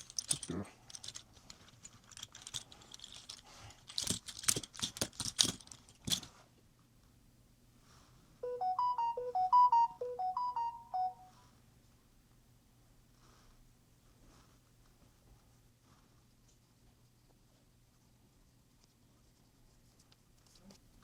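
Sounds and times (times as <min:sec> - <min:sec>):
sharp clicks and rattles: 0:00.0 - 0:06.3
electronic chime melody: 0:08.4 - 0:11.3.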